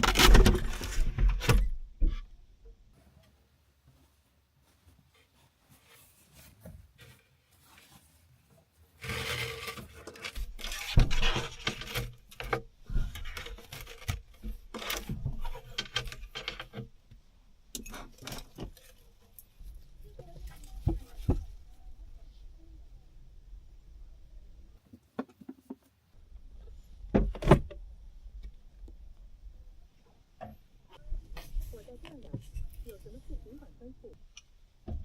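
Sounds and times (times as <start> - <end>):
rustling and scraping: 0.0 - 17.0, 17.8 - 22.5, 30.4 - 34.2.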